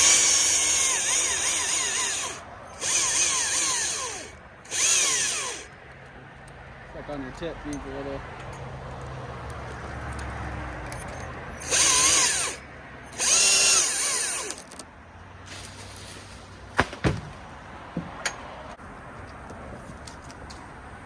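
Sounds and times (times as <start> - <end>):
chainsaw cutting: 0.0 - 5.7, 11.6 - 14.7.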